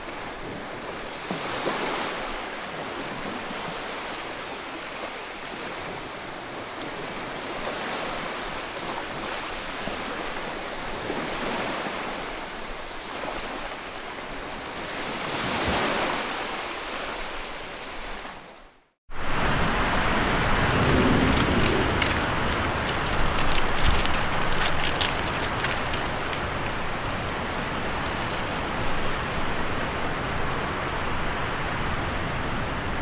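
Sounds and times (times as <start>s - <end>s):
floodwater rushing: 19.1s - 33.0s.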